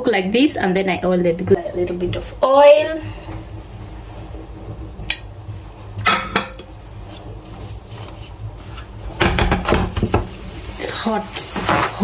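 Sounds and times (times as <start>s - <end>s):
low steady hum: 0.0s - 12.0s
cookware clinking: 6.0s - 6.7s.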